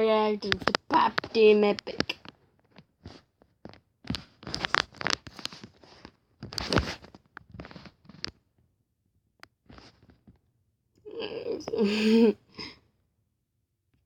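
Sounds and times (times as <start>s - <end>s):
rustling and crackling: 0.0s - 8.6s, 9.6s - 10.4s.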